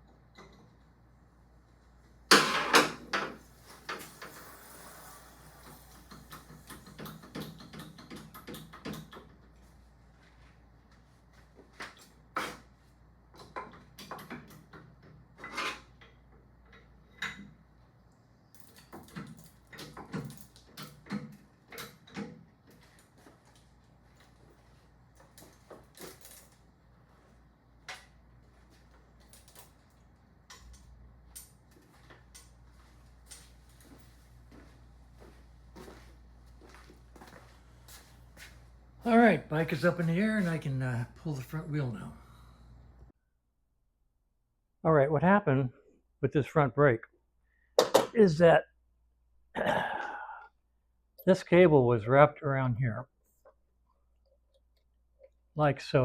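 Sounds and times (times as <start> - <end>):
workshop knocks and clatter: 2.3 - 4.3, 6.0 - 9.6, 47.8 - 48.2.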